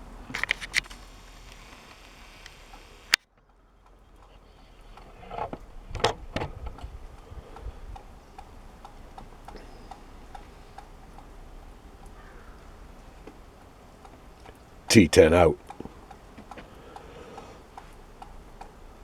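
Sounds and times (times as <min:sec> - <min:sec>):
light clicks and knocks: 0:03.3 - 0:14.9, 0:15.6 - 0:19.0.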